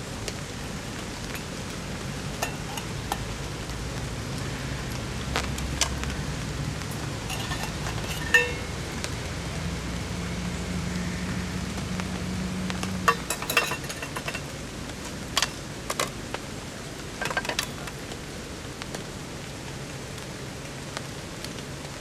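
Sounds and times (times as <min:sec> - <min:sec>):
steady rain: 0:00.0 - 0:22.0
metallic clinks of cooking gear: 0:02.4 - 0:03.3, 0:06.9 - 0:08.7, 0:13.1 - 0:14.5.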